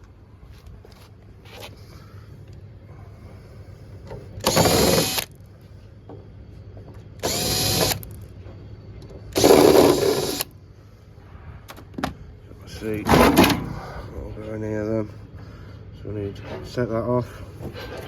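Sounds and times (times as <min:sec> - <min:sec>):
drill-driver motor whining: 0:04.4 - 0:05.3, 0:07.2 - 0:08.1, 0:09.3 - 0:10.5.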